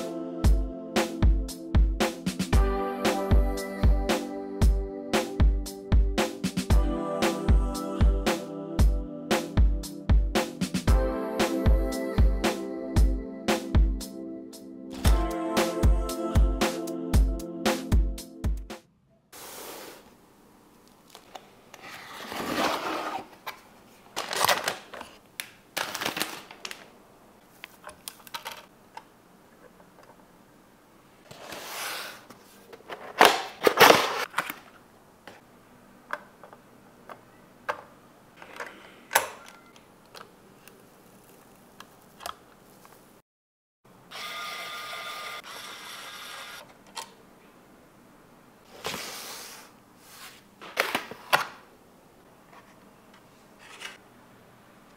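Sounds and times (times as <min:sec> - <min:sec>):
packaging rustling: 0:22.1 - 0:26.9.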